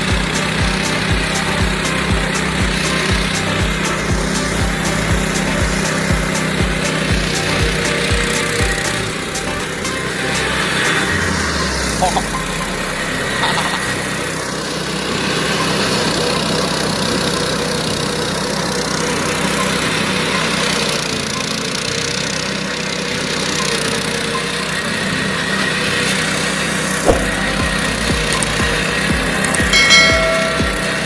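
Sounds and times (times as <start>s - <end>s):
brush cutter engine running: 0.0s - 31.0s
short knock: 27.1s - 27.5s.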